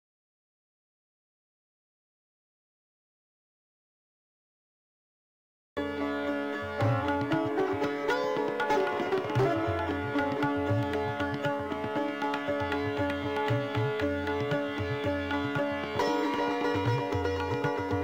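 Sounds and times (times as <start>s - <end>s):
plucked string melody: 5.8s - 18.0s.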